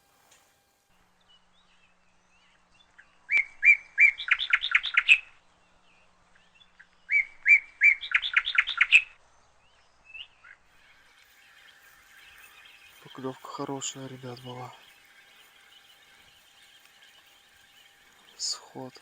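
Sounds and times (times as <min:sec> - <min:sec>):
songbird singing: 0:01.0 - 0:19.0.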